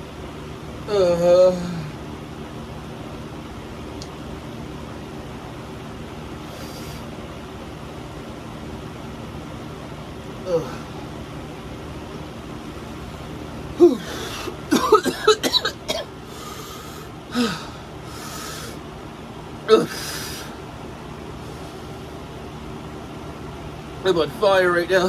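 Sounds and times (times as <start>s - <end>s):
person coughing: 10.5s - 10.8s, 13.8s - 16.1s, 19.7s - 20.1s
person gasping and blowing breaths: 10.5s - 11.0s, 13.8s - 14.6s, 16.3s - 18.8s, 19.7s - 20.6s.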